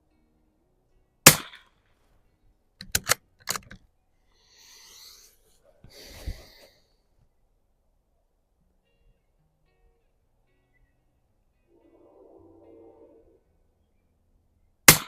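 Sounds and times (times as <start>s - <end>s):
rifle shot: 1.3s - 1.6s
rifle bolt clicks: 2.8s - 3.8s.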